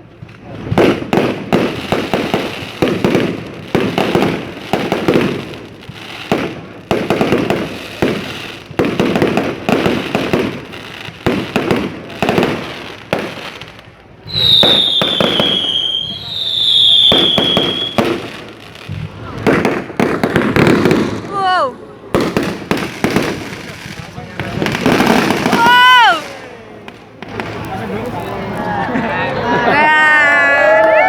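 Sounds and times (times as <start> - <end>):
fireworks bangs and crackling: 0.0 - 28.9
firework whistle gliding down: 14.2 - 18.1.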